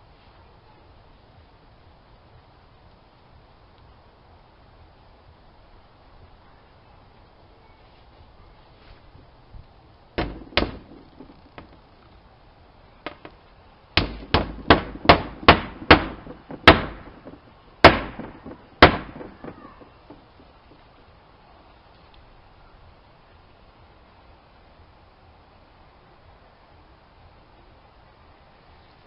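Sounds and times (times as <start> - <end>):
hammer blows on wood: 10.2 - 11.8, 14.0 - 20.8.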